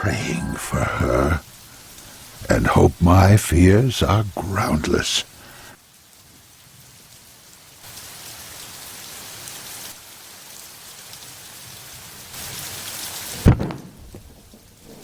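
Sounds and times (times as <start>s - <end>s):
rain falling: 0.0s - 15.0s
sharp thunderclap: 13.4s - 15.0s.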